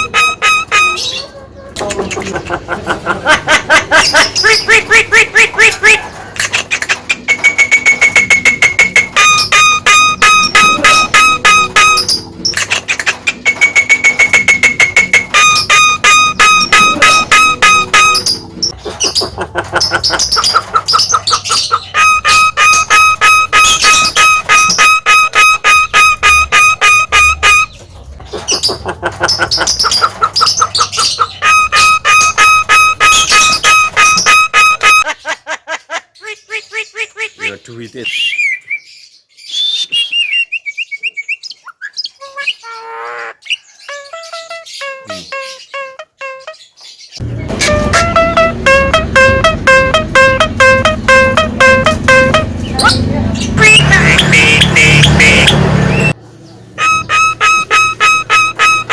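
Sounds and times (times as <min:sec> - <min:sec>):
harsh buzzy rattle call: 0:00.0 - 0:01.3, 0:03.9 - 0:27.8, 0:28.4 - 0:35.1, 0:43.9 - 0:46.6, 0:47.3 - 0:56.2, 0:56.8 - 0:58.9
myna whistled chirps: 0:07.1 - 0:12.7, 0:38.1 - 0:42.6.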